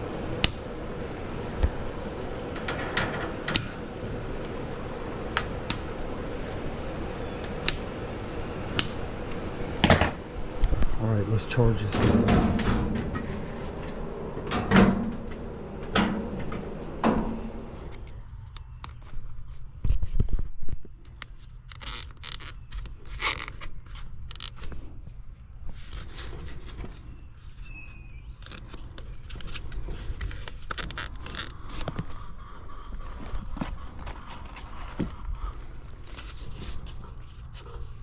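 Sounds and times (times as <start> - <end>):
steady low hum: 0.0 - 22.2, 22.8 - 38.0
tools clicking and scraping: 21.7 - 24.7.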